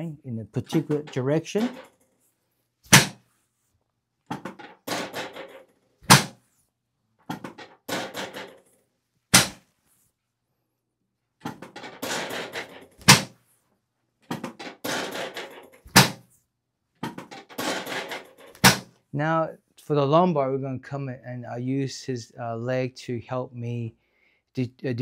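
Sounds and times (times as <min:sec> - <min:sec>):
table section dropping with clack: 0:02.9 - 0:03.2, 0:04.3 - 0:06.4, 0:07.3 - 0:08.7, 0:09.4 - 0:09.6, 0:11.4 - 0:13.4, 0:14.3 - 0:16.3, 0:17.0 - 0:18.9.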